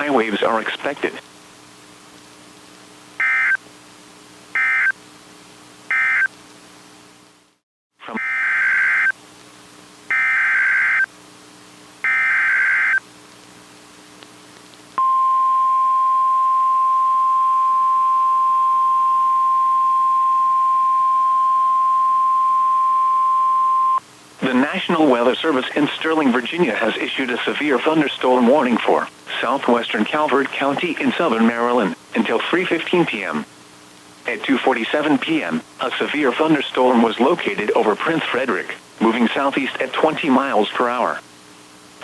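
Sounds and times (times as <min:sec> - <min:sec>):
steady warning alarm tone: 0:03.2 - 0:03.6, 0:04.6 - 0:05.0, 0:05.9 - 0:06.3, 0:08.1 - 0:09.1, 0:10.1 - 0:11.1, 0:12.0 - 0:13.0, 0:15.0 - 0:24.0
radio data bursts: 0:08.0 - 0:09.2, 0:10.1 - 0:11.1, 0:12.0 - 0:13.0.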